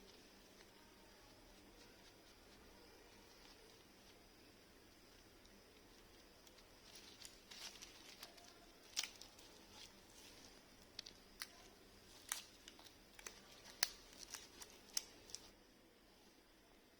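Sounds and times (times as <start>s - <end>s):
packaging rustling: 6.4s - 15.5s.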